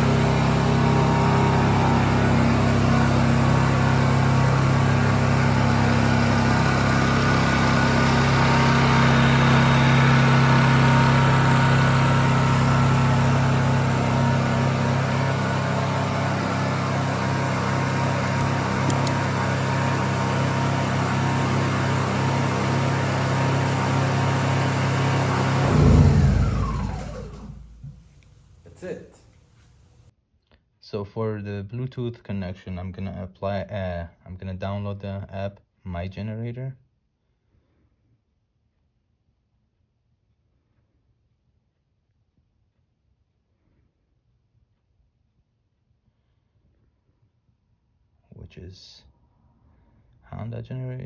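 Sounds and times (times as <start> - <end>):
generator engine running: 0.0 - 29.2.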